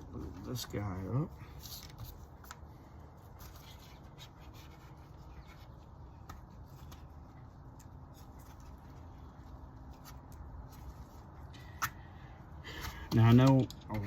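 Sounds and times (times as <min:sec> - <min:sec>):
light clicks of parts: 0:12.8 - 0:14.0.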